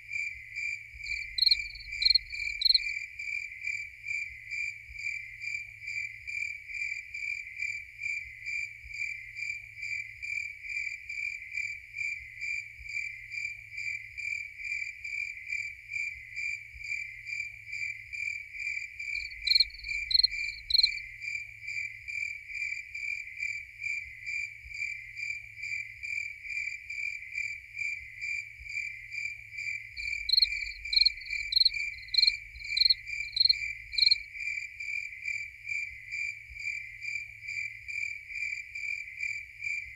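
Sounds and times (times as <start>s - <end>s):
crickets chirping: 0.0s - 39.9s
nearer cricket chirping: 0.2s - 3.8s, 17.0s - 39.9s.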